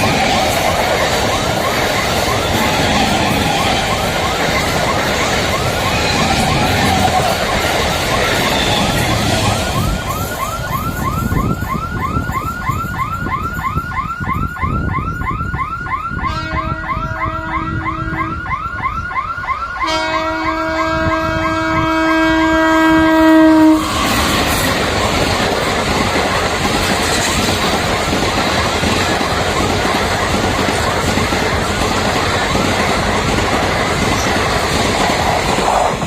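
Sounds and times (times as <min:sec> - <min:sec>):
level-crossing siren chirping: 0:00.0 - 0:21.6
train horn blasts: 0:16.2 - 0:18.5, 0:19.8 - 0:24.5.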